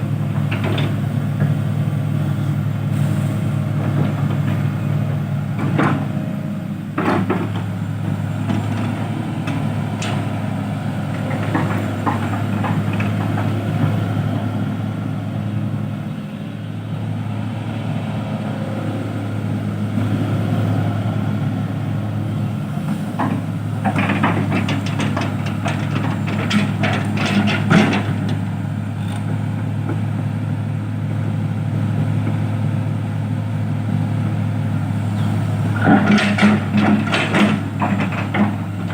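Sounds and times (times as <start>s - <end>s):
diesel engine humming: 0.0s - 38.9s
rapid knocks and rattles: 23.2s - 28.4s, 35.8s - 38.9s.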